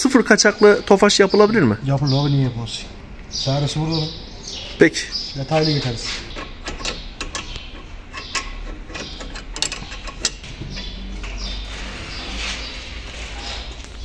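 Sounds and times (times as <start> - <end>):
steady low hum: 0.0 - 14.0
metal tools clicking and knocking: 6.3 - 11.6.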